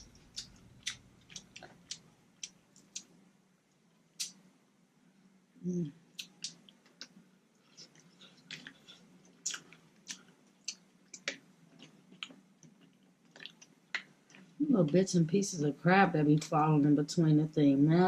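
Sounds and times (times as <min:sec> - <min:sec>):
chewing with wet mouth clicks: 0:00.1 - 0:03.1, 0:06.2 - 0:14.5.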